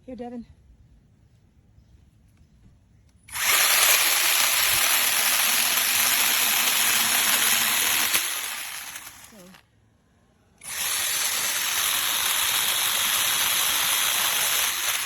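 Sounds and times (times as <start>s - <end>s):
mini chainsaw cutting branch: 3.3s - 9.6s, 10.6s - 15.0s.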